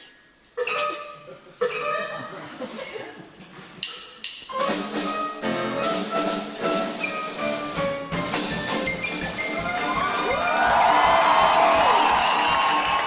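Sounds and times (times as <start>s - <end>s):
orchestra playing cartoon music: 0.6s - 2.4s, 4.2s - 13.0s.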